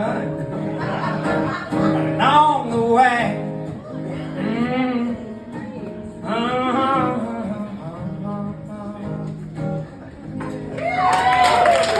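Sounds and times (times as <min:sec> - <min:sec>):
strummed acoustic guitar: 0:00.0 - 0:10.8.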